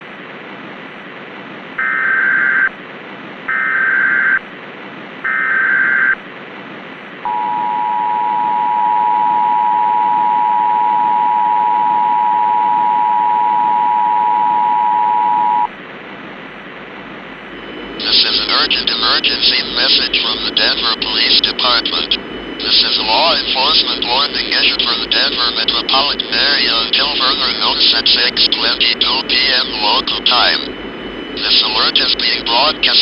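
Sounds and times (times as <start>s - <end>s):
static hiss: 15.7s - 33.0s
warbling digital data tones: 17.6s - 33.0s.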